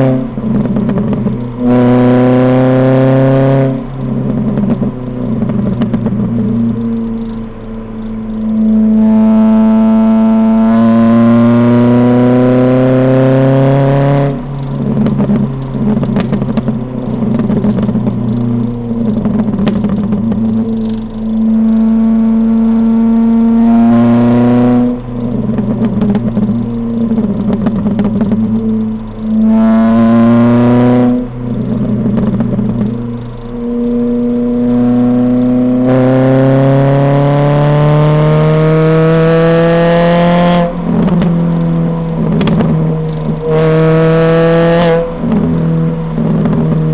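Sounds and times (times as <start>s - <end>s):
car engine revving: 0.0s - 46.9s
exhaust pops and crackles: 0.0s - 46.9s.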